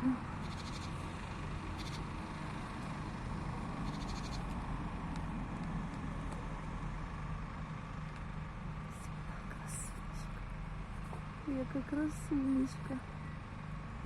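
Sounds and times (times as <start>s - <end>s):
low outdoor hum: 0.0s - 14.0s
small bird chirps: 0.4s - 1.1s, 1.7s - 2.2s, 3.8s - 4.6s.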